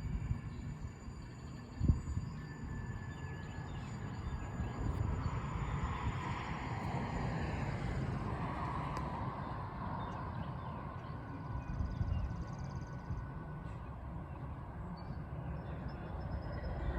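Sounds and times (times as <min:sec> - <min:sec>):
train rumbling and rushing: 0:00.0 - 0:16.9.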